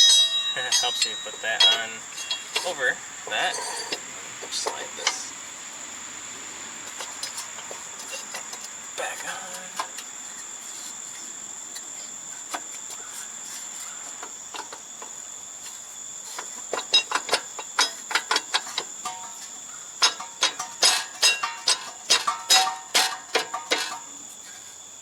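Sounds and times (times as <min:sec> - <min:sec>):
metal tools clicking and clinking: 0:00.0 - 0:05.3, 0:16.7 - 0:24.1
cricket trill: 0:00.0 - 0:25.0.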